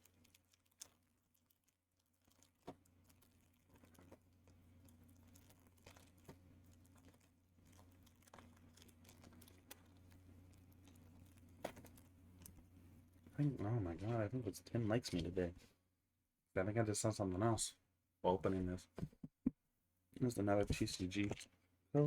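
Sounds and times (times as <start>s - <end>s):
foil wrapper crinkling and tearing: 0.0s - 12.7s
low steady hum: 0.0s - 15.9s.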